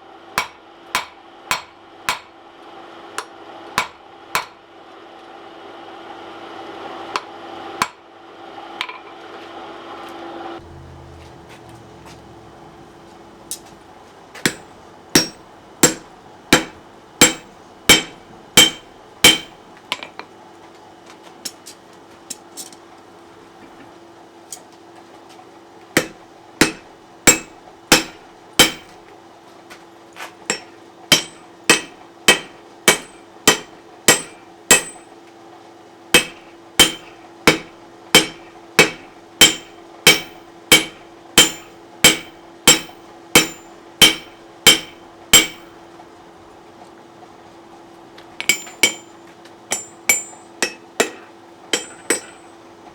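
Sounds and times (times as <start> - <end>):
hammer striking steel on anvil: 0.4 - 2.3, 3.2 - 4.6, 14.4 - 20.2, 26.0 - 29.0, 30.5 - 35.2, 36.2 - 45.8, 48.4 - 52.6
low hum: 10.5 - 19.5.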